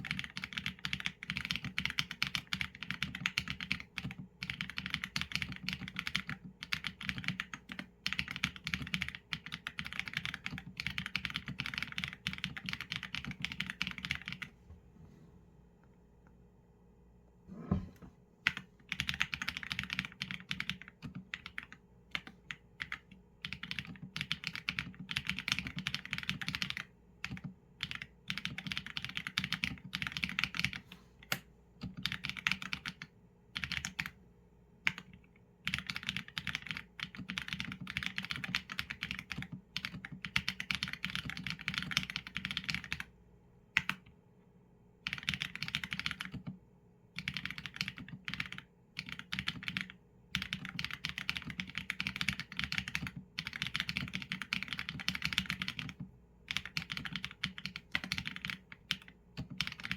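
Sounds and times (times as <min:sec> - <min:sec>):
mechanical keyboard keystrokes: 0:18.5 - 0:34.1, 0:35.7 - 0:43.0, 0:45.1 - 0:46.5, 0:47.2 - 0:59.9.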